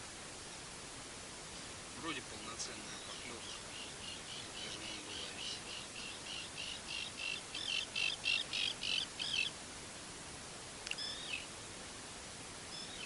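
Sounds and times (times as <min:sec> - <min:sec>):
songbird chirping: 0:02.0 - 0:09.6, 0:10.8 - 0:11.6, 0:12.7 - 0:13.0.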